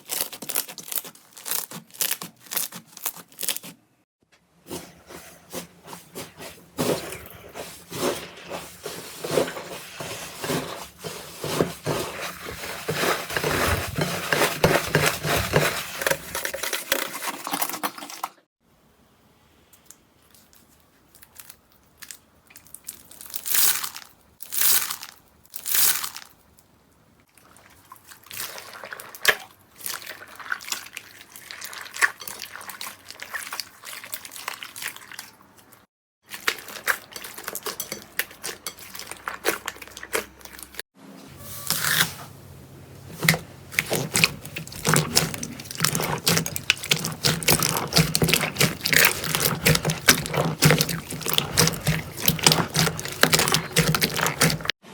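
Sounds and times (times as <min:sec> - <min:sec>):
wet slime squelches: 0:27.2 - 0:40.8, 0:43.0 - 0:54.8
slime crackling and popping: 0:43.8 - 0:54.7.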